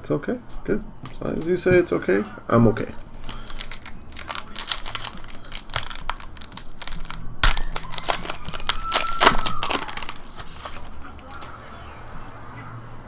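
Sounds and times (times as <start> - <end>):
foil wrapper crinkling and tearing: 3.0 - 11.3.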